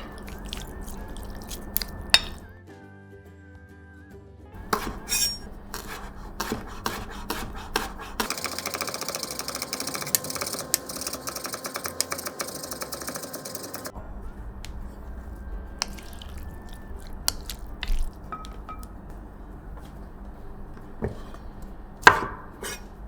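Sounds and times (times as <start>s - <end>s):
utensils clinking against dishes: 0.0s - 2.5s, 4.6s - 5.9s, 15.8s - 19.0s
light background music: 0.0s - 23.0s.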